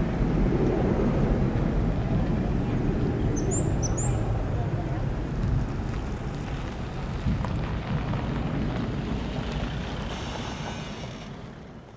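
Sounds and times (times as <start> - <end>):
jet engines rumbling: 0.0 - 10.1.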